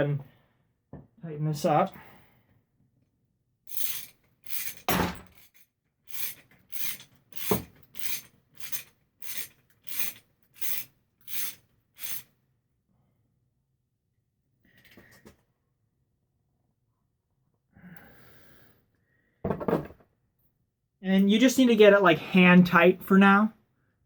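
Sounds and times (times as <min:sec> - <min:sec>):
ratchet wrench rasping: 0:03.7 - 0:12.3.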